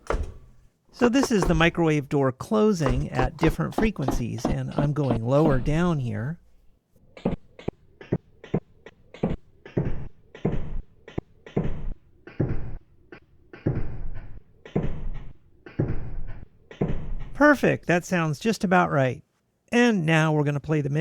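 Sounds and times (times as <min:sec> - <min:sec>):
pitched microwave door thumps: 0:00.0 - 0:02.1, 0:02.8 - 0:06.7.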